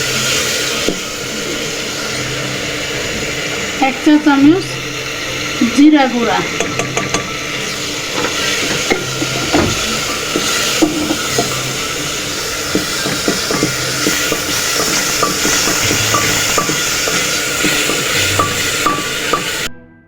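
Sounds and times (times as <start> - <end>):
spices sizzling in hot oil: 0.0 - 19.7
spoon scraping and tapping pot: 6.6 - 7.4, 12.7 - 19.6.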